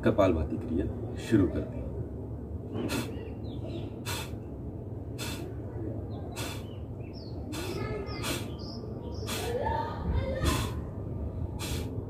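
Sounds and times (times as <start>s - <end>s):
faint birds chirping: 0.5s - 12.0s
forceful nasal exhalations: 2.8s - 3.3s, 4.0s - 4.5s, 5.1s - 5.6s, 6.3s - 6.8s, 7.4s - 8.6s, 9.2s - 9.6s, 10.4s - 10.8s, 11.6s - 12.0s.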